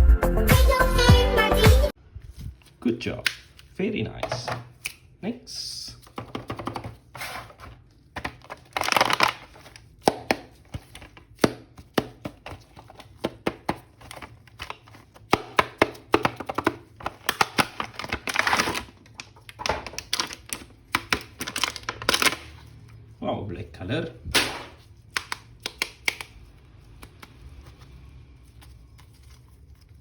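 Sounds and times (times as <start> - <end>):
plastic packaging crinkling: 7.1 - 11.4, 12.4 - 22.9.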